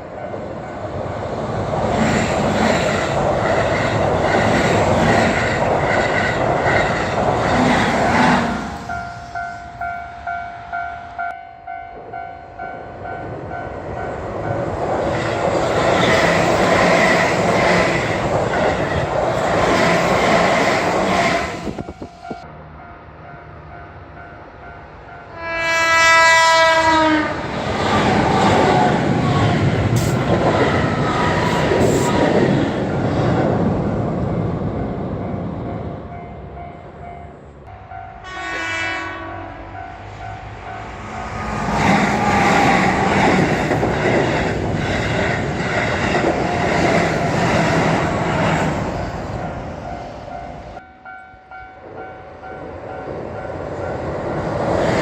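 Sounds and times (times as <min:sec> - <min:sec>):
crossing warning bell ringing: 0:08.6 - 0:14.8, 0:35.3 - 0:41.8, 0:48.8 - 0:54.1
train horn blast: 0:25.2 - 0:27.5, 0:38.1 - 0:42.3.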